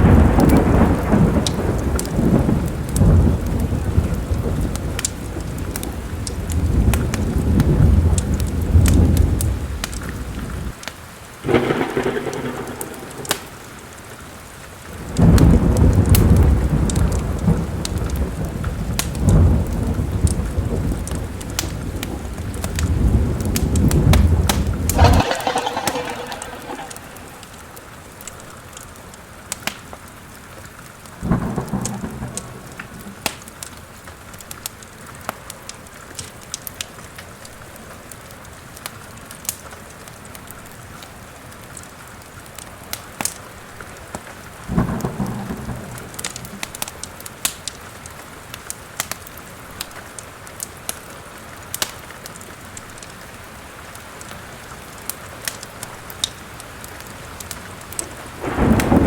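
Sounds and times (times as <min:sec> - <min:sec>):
steady rain: 0:00.0 - 0:28.0, 0:28.8 - 0:59.0
thunder rumbles: 0:11.4 - 0:27.8, 0:44.7 - 0:46.8, 0:58.0 - 0:59.0.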